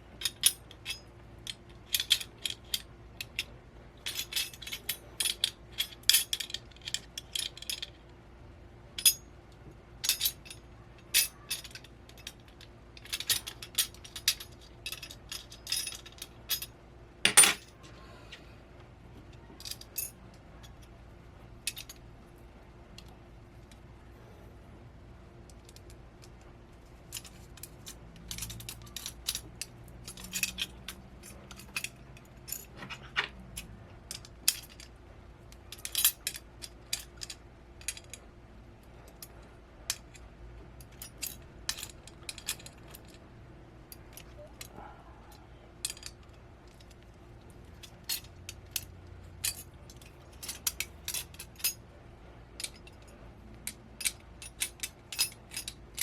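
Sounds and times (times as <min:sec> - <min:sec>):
small metal parts clinking: 0:00.1 - 0:08.2, 0:09.0 - 0:09.3, 0:10.0 - 0:17.9, 0:19.3 - 0:21.0, 0:21.6 - 0:22.1, 0:25.4 - 0:43.2, 0:43.8 - 0:56.0.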